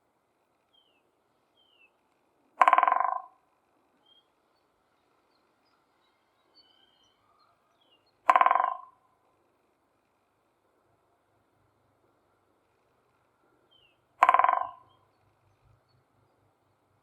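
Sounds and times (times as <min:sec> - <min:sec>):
woodpecker drumming on branch: 0:02.5 - 0:03.6, 0:08.1 - 0:09.2, 0:14.0 - 0:16.0.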